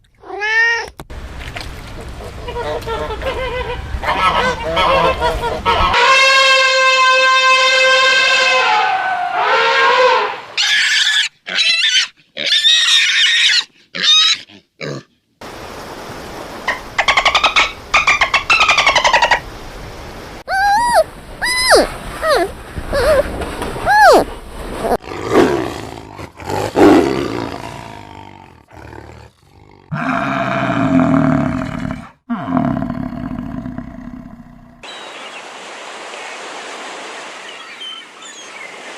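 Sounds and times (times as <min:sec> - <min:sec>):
animal squealing: 0:10.6 - 0:14.5, 0:20.5 - 0:24.3
lion roaring: 0:25.0 - 0:34.8.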